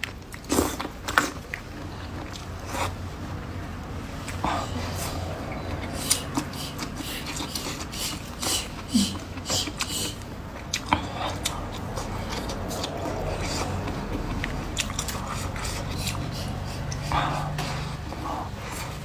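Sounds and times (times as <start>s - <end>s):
person biting and chewing: 5.8s - 17.6s.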